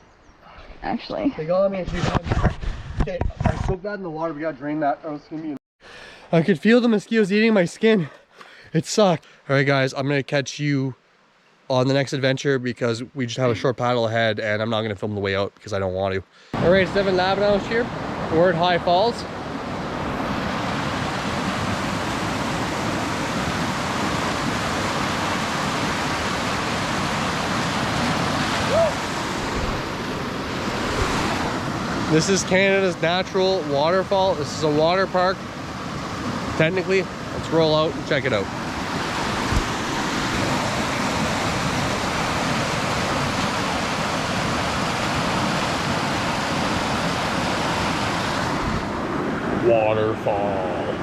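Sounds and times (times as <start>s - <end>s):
waterfall rushing: 16.6s - 50.8s
waterfall rushing over rock: 20.3s - 35.0s.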